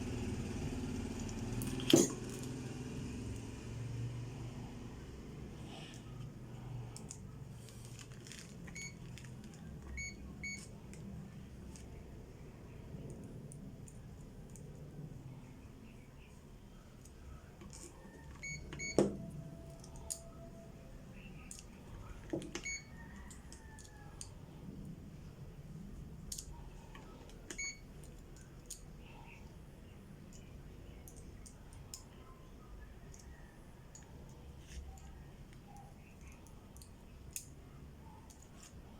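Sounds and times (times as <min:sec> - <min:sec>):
clamp meter beeps: 0:09.9 - 0:10.7, 0:18.4 - 0:19.1, 0:22.6 - 0:22.9, 0:27.5 - 0:27.9
meter electronic beep: 0:18.4 - 0:19.2.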